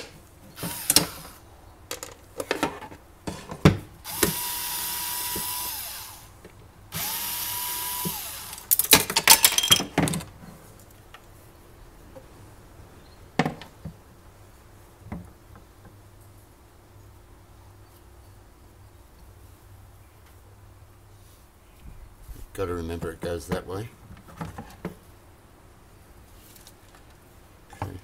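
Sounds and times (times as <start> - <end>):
cordless drill spinning: 0.5 - 1.4, 4.1 - 8.8.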